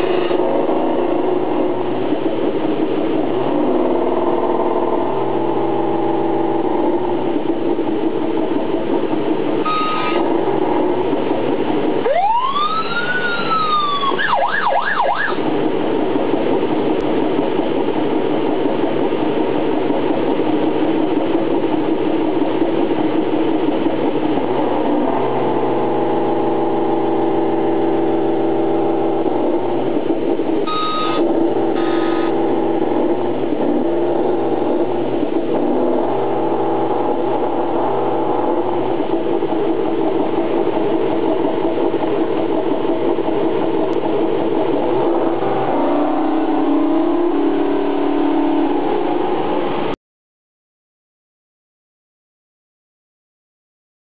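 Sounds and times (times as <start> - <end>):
simulated engine running: 0.0 - 50.0
siren-like whoop: 12.1 - 15.4
short beeps: 30.7 - 31.2.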